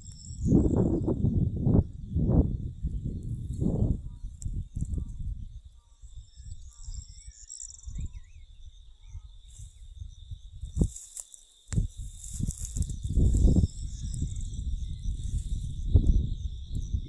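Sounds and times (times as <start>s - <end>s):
faint bird chirps: 0.0s - 11.4s
high insect drone: 0.0s - 17.0s.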